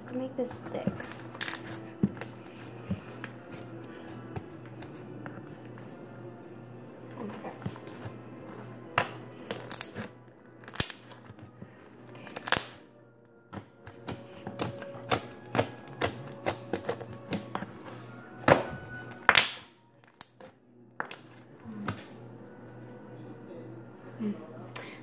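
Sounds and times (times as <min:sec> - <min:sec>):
faint music: 0:00.0 - 0:25.0
slime squishing: 0:00.2 - 0:12.9.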